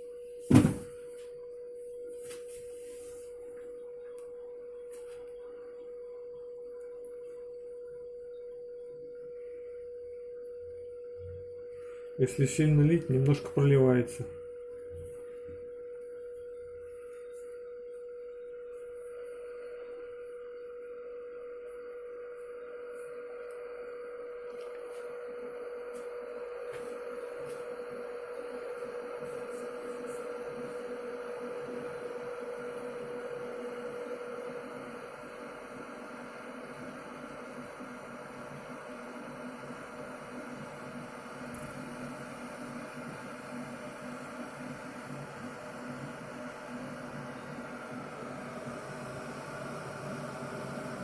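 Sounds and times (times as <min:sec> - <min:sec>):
electric kettle heating water: 0:03.2 - 0:51.0.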